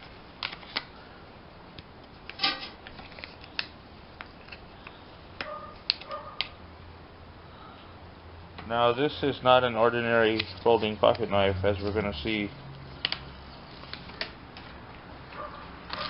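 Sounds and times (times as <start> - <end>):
handling noises: 10.0 - 16.0.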